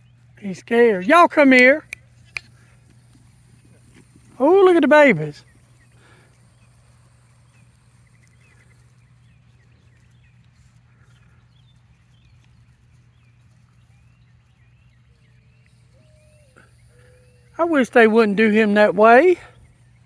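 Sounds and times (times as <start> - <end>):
small birds chirping: 0.0 - 20.0
steady low hum: 0.0 - 20.0
bird trills: 13.3 - 17.6.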